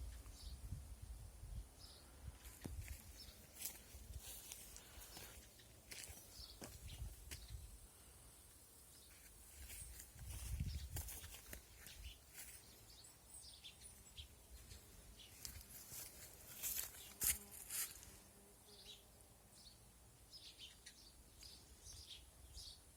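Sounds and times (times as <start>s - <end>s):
faint outdoor ambience: 0.0s - 22.9s.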